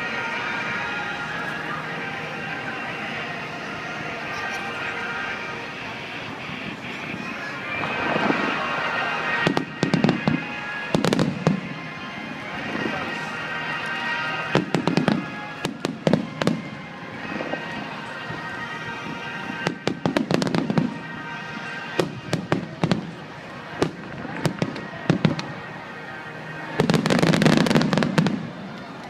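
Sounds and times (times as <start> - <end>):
fireworks bursting with bangs and crackles: 6.2 - 29.0.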